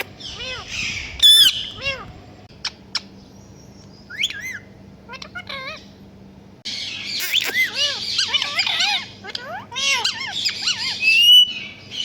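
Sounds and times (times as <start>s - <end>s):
parrot whistling and squawking: 0.0s - 2.1s, 4.1s - 5.9s, 6.7s - 12.0s.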